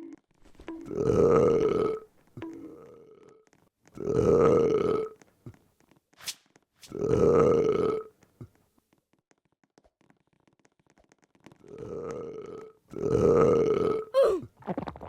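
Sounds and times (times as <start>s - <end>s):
long burps: 0.8s - 3.4s, 4.0s - 5.2s, 6.9s - 8.1s, 11.7s - 15.0s.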